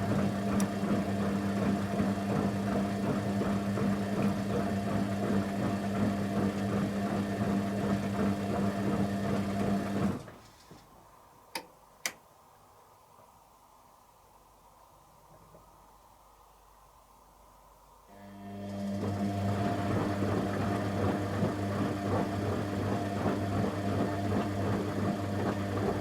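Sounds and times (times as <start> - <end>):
washing machine humming: 0.0 - 10.3, 18.1 - 26.0.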